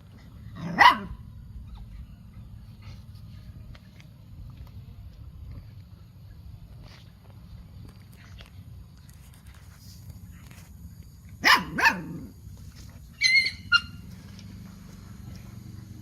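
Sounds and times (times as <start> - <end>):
dog barking: 0.6 - 1.3, 11.4 - 12.3
dog yelping: 0.6 - 2.3, 11.4 - 12.3, 13.1 - 14.4.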